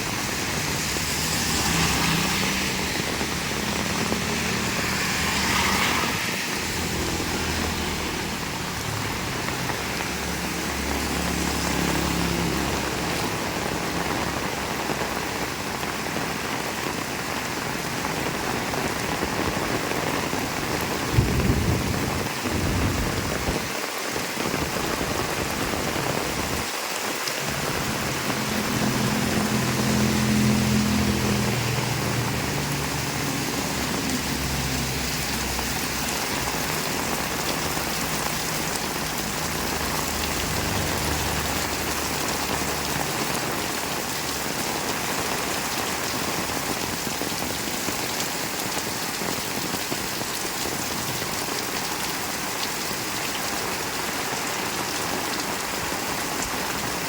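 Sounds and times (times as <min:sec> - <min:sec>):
heavy rain pouring: 0:00.0 - 0:57.0
vehicle engine hum: 0:27.4 - 0:43.4.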